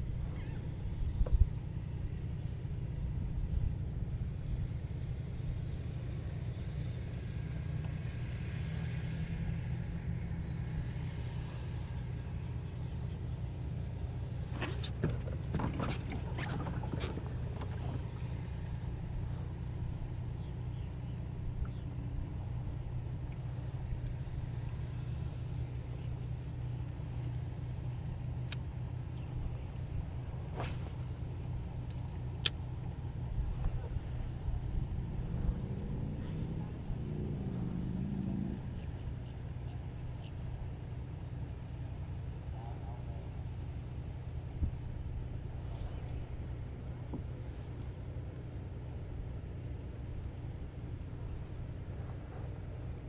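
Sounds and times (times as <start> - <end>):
low motor drone: 0.0 - 53.0.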